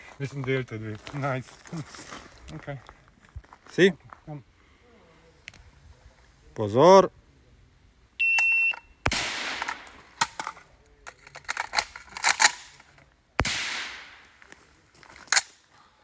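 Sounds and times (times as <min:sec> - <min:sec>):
shot timer beep: 0:08.2 - 0:09.0
suppressed rifle shots: 0:09.0 - 0:10.4, 0:13.4 - 0:14.2.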